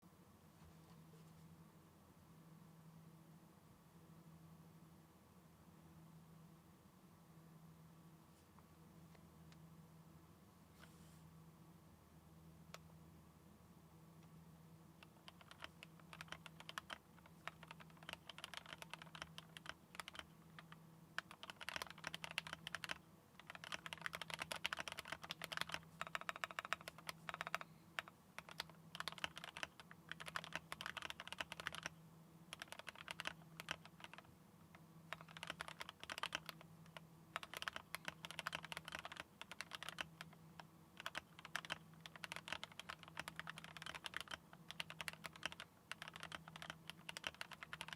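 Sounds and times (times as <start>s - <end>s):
mechanical keyboard typing: 15.0s - 34.3s, 35.1s - 47.9s.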